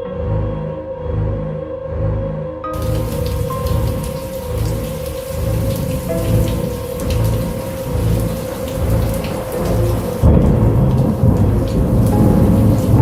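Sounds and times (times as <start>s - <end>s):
rolling thunder: 2.8s - 13.0s
steady rain: 2.8s - 13.0s.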